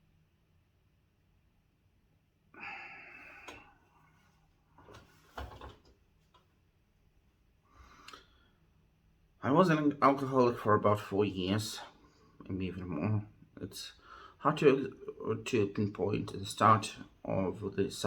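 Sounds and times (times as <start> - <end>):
person breathing: 2.6 - 4.2, 7.6 - 8.7, 14.0 - 14.4.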